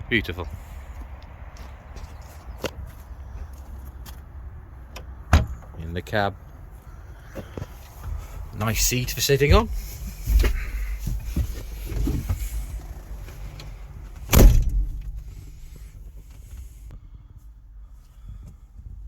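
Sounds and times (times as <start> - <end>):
diesel engine idling: 3.0 - 18.2
knocks and clunks in cab: 4.9 - 5.8, 8.0 - 16.5
loud bang: 14.3 - 15.8.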